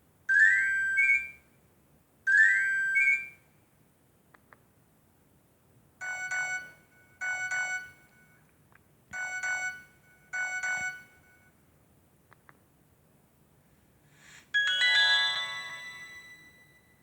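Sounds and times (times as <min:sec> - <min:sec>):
phone ringtone electronic notes: 0:14.6 - 0:17.0.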